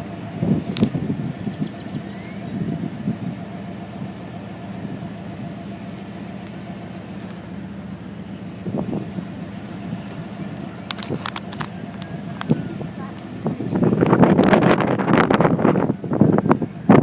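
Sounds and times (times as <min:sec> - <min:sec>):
vehicle engine idling: 0:00.0 - 0:17.0.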